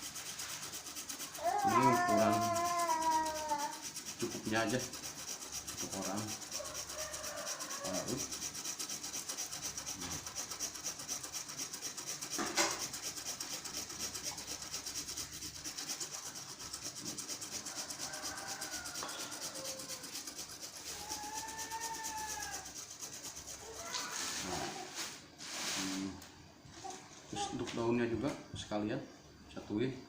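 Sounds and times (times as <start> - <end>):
root scraping on a grater: 0.0 - 26.1.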